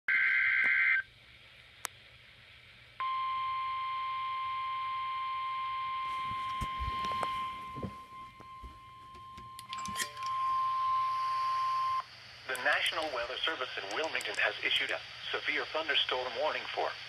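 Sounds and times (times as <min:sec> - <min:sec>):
steady alarm tone beep: 0:03.0 - 0:12.1.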